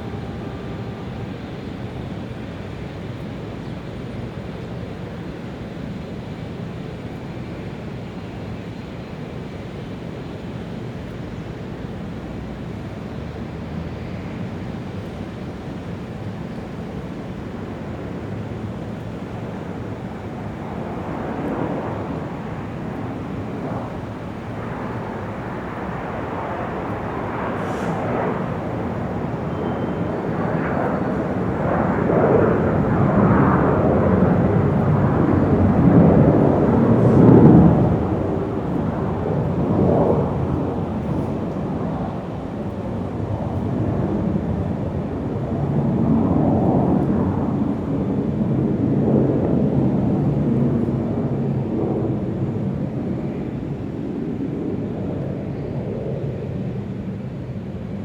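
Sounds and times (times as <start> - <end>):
airport hum: 0.0 - 4.0, 14.2 - 48.3
jet plane flying over: 0.0 - 58.0.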